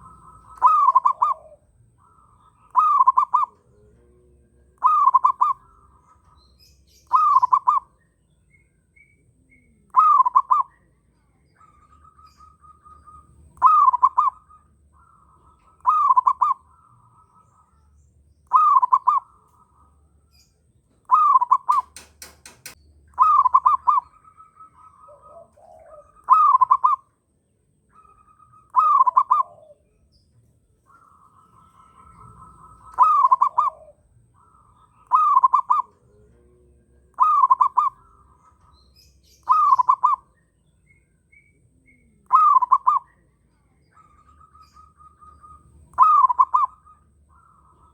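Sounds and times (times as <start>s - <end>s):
birds trilling: 0.0s - 47.9s
dove cooing: 0.0s - 47.9s
quick run of clicks: 21.7s - 22.8s.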